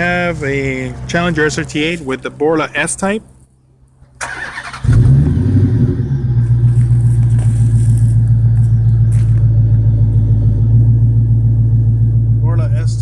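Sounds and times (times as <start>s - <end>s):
car engine idling: 4.1s - 13.0s.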